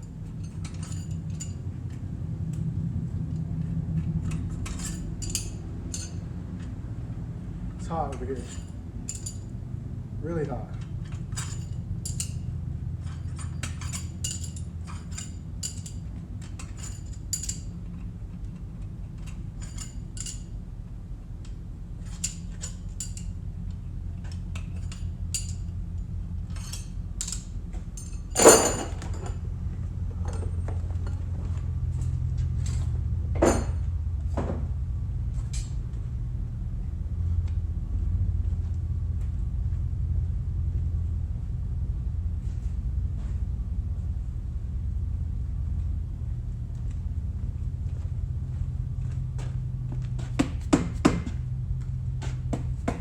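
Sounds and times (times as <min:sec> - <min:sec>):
tools and engine parts clinking: 0:00.0 - 0:02.7, 0:03.4 - 0:34.7, 0:47.8 - 0:53.0
steady low hum: 0:00.0 - 0:53.0
ringing metal clank: 0:28.0 - 0:29.4, 0:33.4 - 0:33.8.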